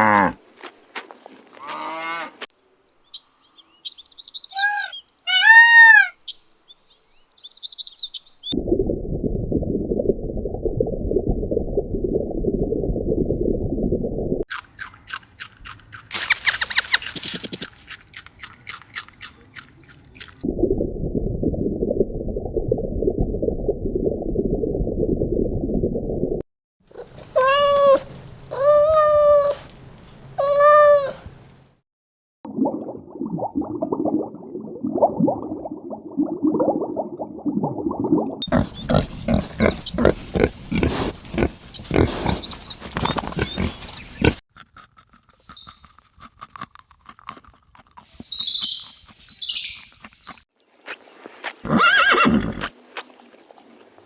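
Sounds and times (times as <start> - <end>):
pitched animal calls: 4.5 - 6.2, 16.1 - 17.8, 38.4 - 44.4
high chirps: 16.1 - 17.6, 45.4 - 45.8, 48.1 - 50.4
grunting pulsing animal calls: 38.4 - 44.4.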